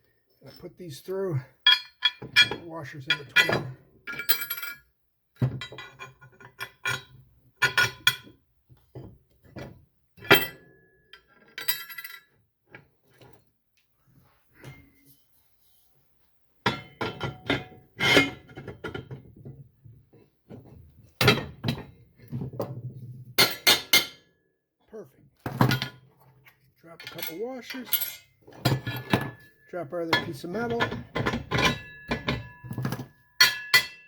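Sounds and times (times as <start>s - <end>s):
steel bolts and washers clinking: 1.7s - 4.9s, 11.2s - 12.4s, 25.6s - 34.0s.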